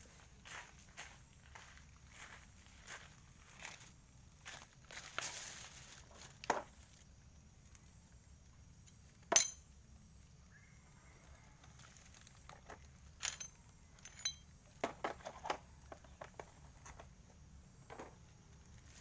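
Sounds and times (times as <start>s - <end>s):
small hard objects clinking: 11.8s - 15.6s.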